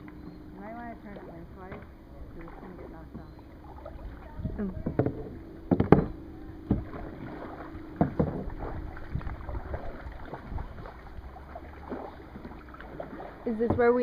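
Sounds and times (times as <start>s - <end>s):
paddle strokes splashing water: 0.0s - 14.0s
sharp knocks: 4.8s - 7.0s, 8.0s - 8.6s.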